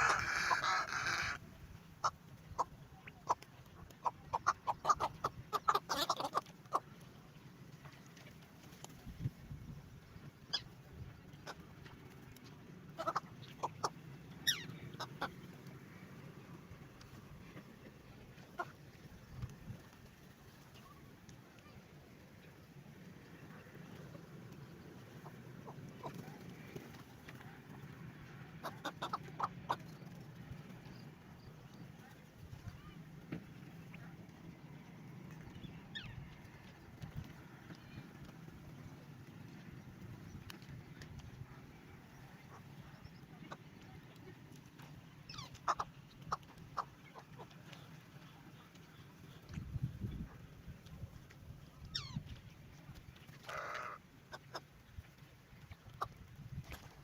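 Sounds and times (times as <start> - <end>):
birds calling: 0.0 - 1.4, 10.4 - 17.7.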